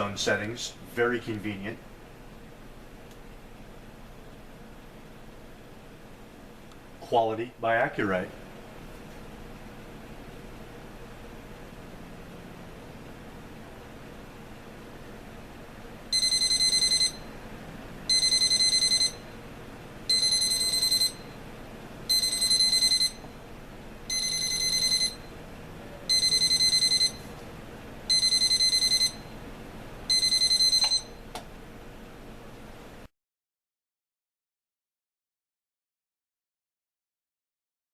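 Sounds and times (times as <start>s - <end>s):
alarm clock beeping: 16.1s - 17.3s, 18.1s - 19.3s, 20.1s - 21.4s, 22.1s - 23.3s, 24.1s - 25.3s, 26.1s - 27.3s, 28.1s - 29.3s, 30.1s - 31.2s.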